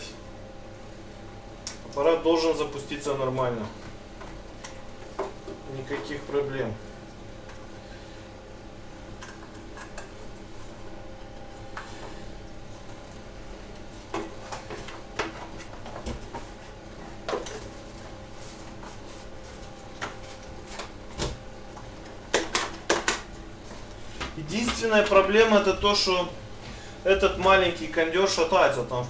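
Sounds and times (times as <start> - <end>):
steady electrical hum: 0.0 - 29.0.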